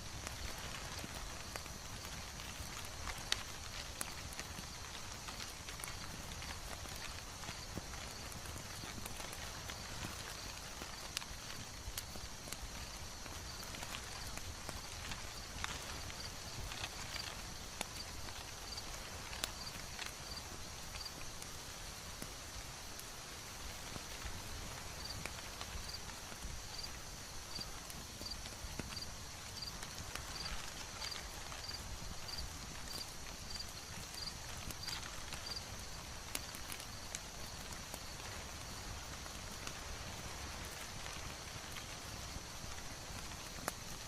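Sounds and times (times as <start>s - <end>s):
fire popping: 0.0s - 44.0s
wood fire hissing: 0.0s - 44.0s.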